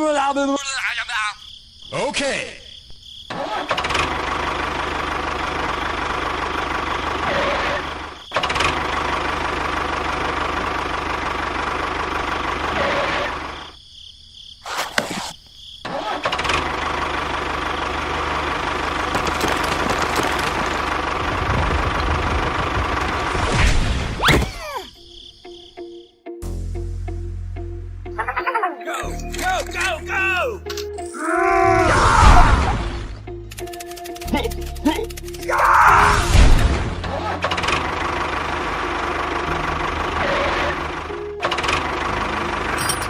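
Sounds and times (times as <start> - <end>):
engine running: 3.8 - 13.6, 16.2 - 23.6, 36.5 - 43.0.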